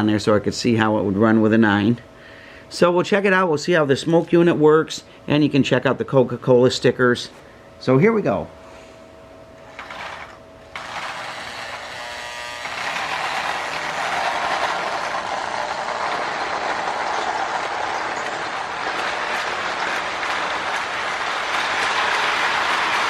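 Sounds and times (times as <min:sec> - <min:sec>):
toy train motor whirring and clattering: 0:09.7 - 0:23.0.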